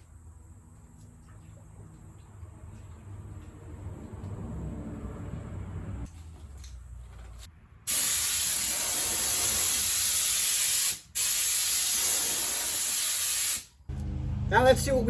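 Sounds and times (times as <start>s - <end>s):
paint spray gun spraying: 7.9s - 13.7s.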